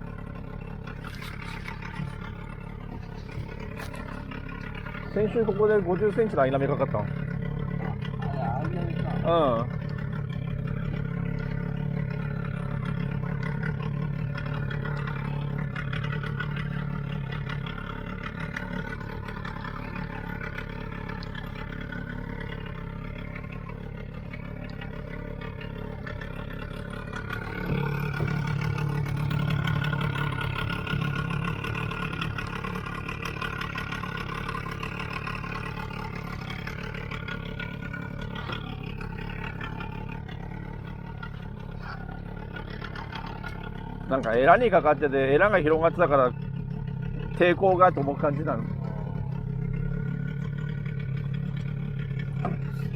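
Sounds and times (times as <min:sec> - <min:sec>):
outboard motor running: 0:00.0 - 0:52.9.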